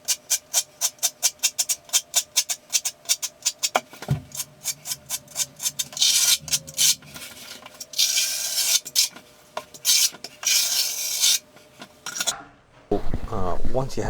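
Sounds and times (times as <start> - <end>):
trowel scraping thinset: 4.4 - 9.2.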